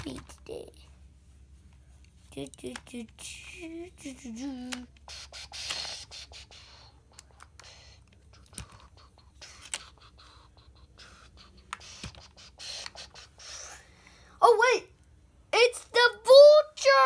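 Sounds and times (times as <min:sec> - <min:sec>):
plastic toys clicking: 0:02.4 - 0:13.3.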